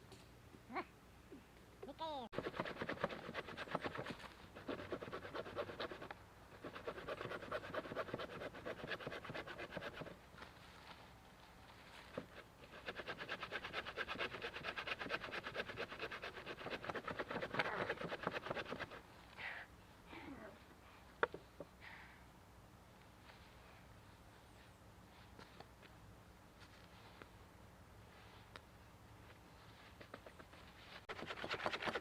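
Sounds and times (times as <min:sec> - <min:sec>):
hand saw cutting log: 0:02.4 - 0:10.2, 0:12.1 - 0:19.0, 0:31.1 - 0:32.0.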